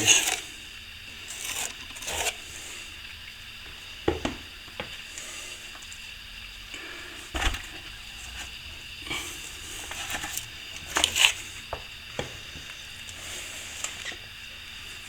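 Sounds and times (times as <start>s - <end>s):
scraper scraping wet plaster: 0.0s - 2.5s.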